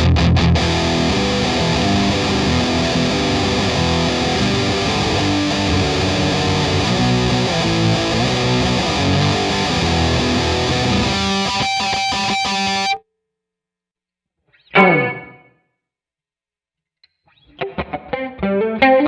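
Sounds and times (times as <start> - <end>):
distorted electric guitar: 0.0 - 13.0, 14.7 - 15.5, 17.4 - 19.0
guitar note dropping in pitch: 0.6 - 13.0, 14.8 - 15.5.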